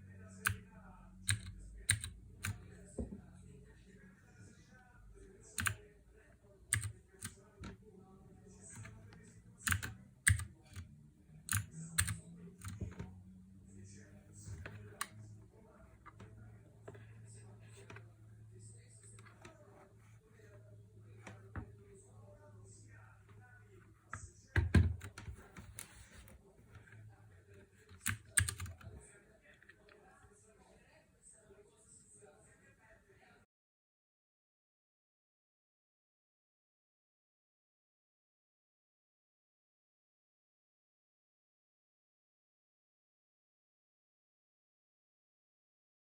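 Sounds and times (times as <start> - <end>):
mechanical keyboard key clicks: 1.3 - 2.6, 5.6 - 5.8, 6.7 - 7.3, 9.6 - 10.8, 11.5 - 12.8, 28.0 - 28.8.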